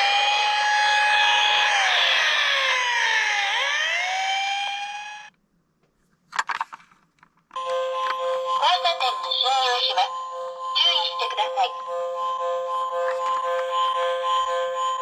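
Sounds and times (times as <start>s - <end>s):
emergency vehicle siren wailing: 0.0s - 5.3s, 7.6s - 15.0s
upbeat music with voice: 8.6s - 10.2s, 10.8s - 11.9s.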